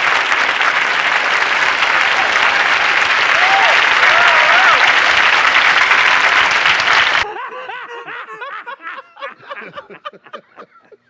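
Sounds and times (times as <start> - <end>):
audience applause: 0.0 - 7.3.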